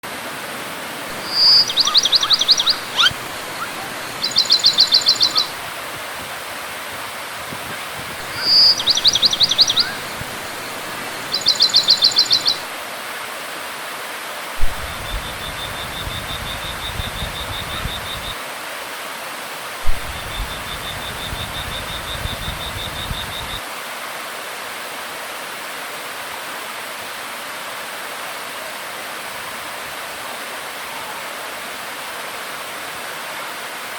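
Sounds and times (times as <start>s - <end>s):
waterfall rushing: 0.0s - 24.4s
bird singing high notes: 1.1s - 5.6s, 8.2s - 12.7s, 14.6s - 18.4s
faint bird trills: 1.1s - 5.7s, 8.2s - 12.6s, 14.6s - 18.4s.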